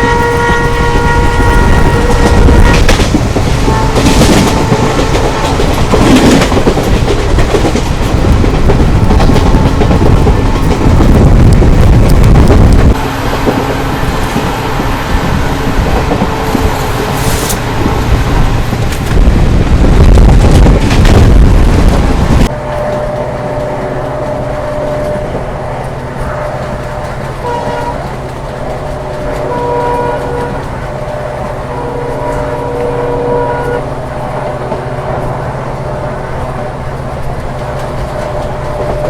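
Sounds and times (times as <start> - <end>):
train horn blasts: 0.0 - 6.4, 9.1 - 10.8, 12.9 - 18.8, 22.5 - 36.6, 37.8 - 39.0
diesel locomotive droning: 0.0 - 39.0.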